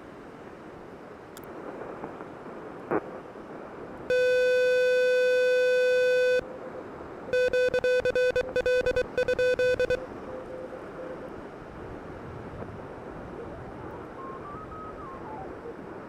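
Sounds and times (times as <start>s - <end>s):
wind and surf hiss: 0.0s - 16.0s
morse code beeps: 4.1s - 6.4s, 7.3s - 10.6s.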